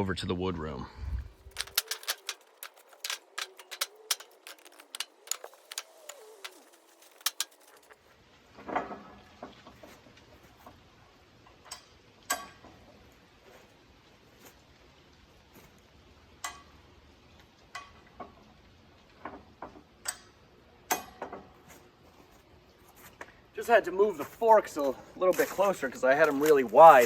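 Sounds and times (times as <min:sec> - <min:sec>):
sharp clicks and light knocks: 0:01.4 - 0:10.8.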